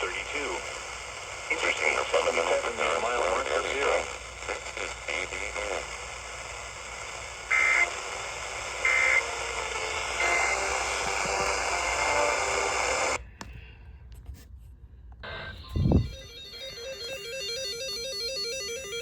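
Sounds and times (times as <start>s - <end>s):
radio static: 0.0s - 13.2s.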